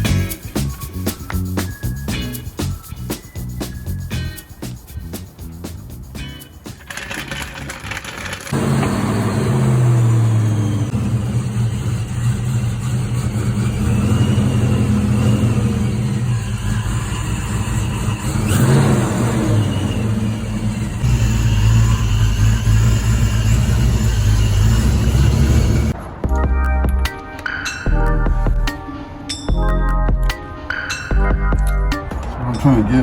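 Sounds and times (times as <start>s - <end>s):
car engine revving: 8.5s - 26.0s.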